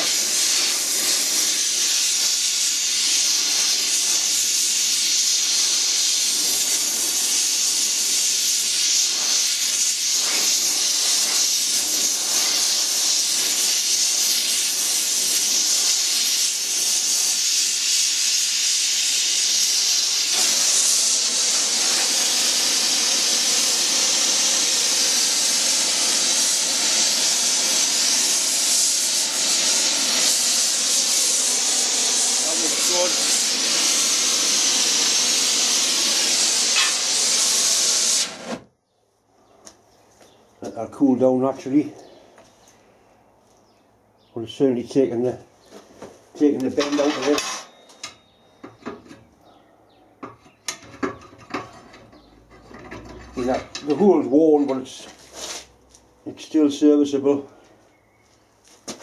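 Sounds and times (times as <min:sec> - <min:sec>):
gas torch flame hissing: 0:00.0 - 0:38.7.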